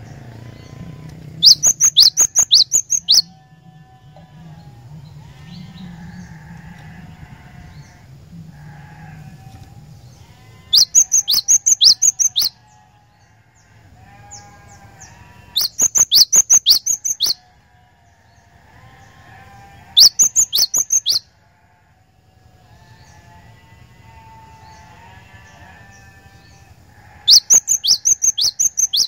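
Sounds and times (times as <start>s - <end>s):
fainter lower bird calling: 0.0s - 3.5s, 8.6s - 12.8s, 14.0s - 17.5s, 18.9s - 21.3s, 24.7s - 29.0s
bird singing rapid sharp notes: 0.6s - 3.3s, 10.7s - 12.6s, 15.6s - 17.4s, 20.0s - 21.2s, 27.3s - 29.0s.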